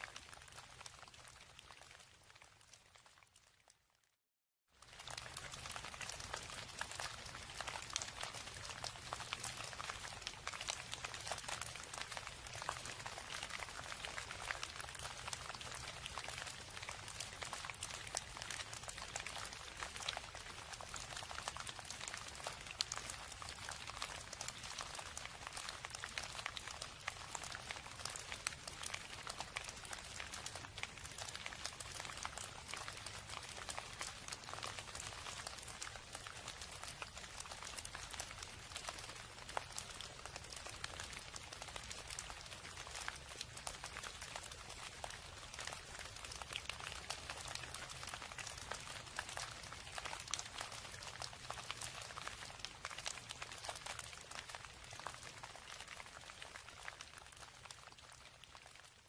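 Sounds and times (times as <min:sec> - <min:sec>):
steady rain patter: 0:00.0 - 0:03.9, 0:04.7 - 0:59.0.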